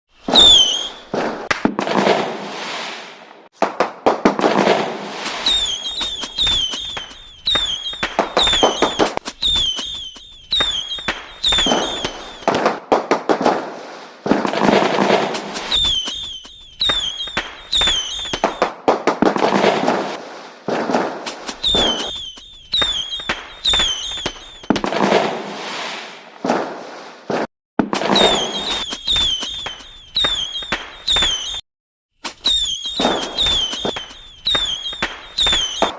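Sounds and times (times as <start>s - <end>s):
fireworks bangs and crackling: 0.1s - 31.6s, 32.2s - 35.9s
high chirping whistles: 0.2s - 1.1s, 5.2s - 12.5s, 15.4s - 18.6s, 21.3s - 24.7s, 28.2s - 31.6s, 32.2s - 35.9s.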